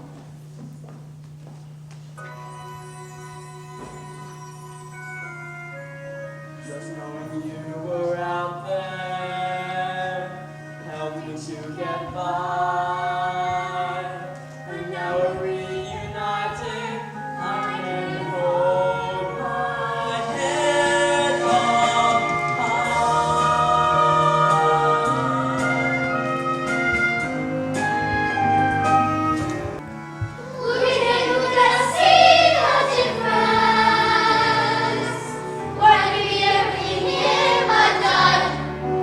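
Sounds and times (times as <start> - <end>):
instrumental accompaniment: 1.1 - 39.0
chorus of young voices singing: 7.9 - 26.4, 30.4 - 39.0.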